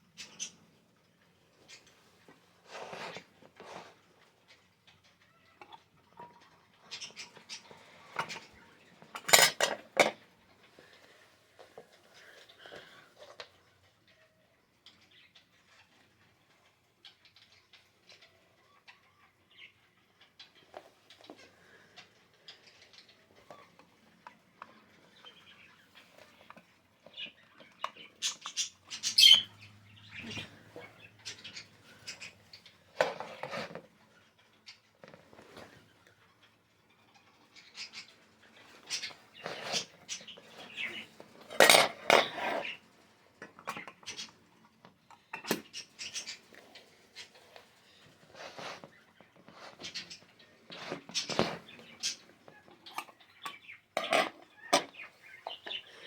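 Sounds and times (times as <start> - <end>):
hard objects clattering and knocking: 8.1 - 10.2, 40.7 - 42.8, 52.8 - 55.7.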